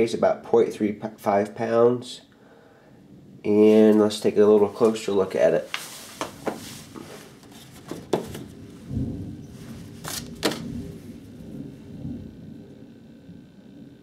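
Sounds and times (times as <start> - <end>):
knife handling noise: 10.0 - 10.7.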